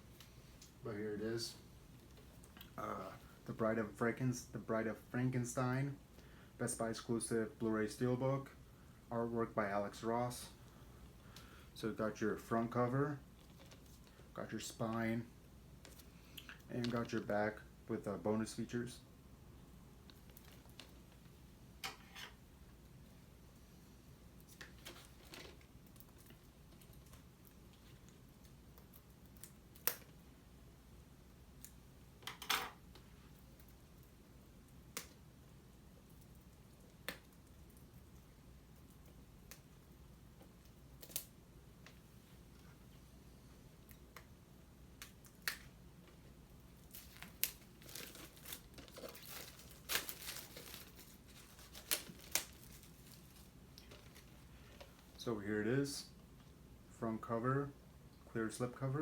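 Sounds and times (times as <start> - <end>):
plastic wrap tearing and crinkling: 24.5 - 27.2, 41.0 - 41.3, 46.7 - 55.2
package rustling: 24.6 - 27.2, 46.8 - 55.2.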